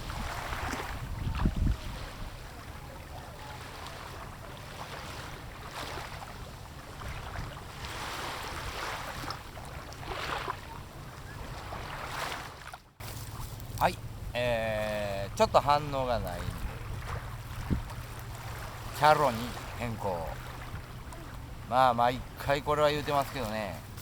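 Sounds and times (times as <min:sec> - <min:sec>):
wind buffeting microphone: 0:00.0 - 0:03.6, 0:13.0 - 0:24.0
water splashing against hull: 0:00.0 - 0:24.0.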